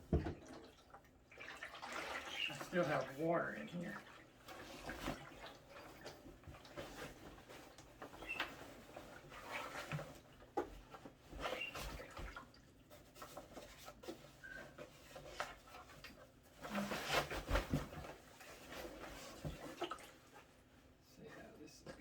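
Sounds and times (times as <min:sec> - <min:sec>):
plastic toilet knocking: 0:00.0 - 0:00.7.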